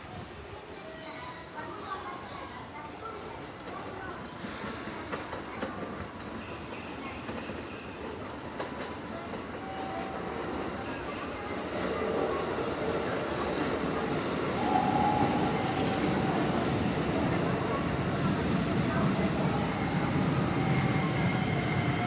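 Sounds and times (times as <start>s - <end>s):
train whine: 9.5s - 22.0s.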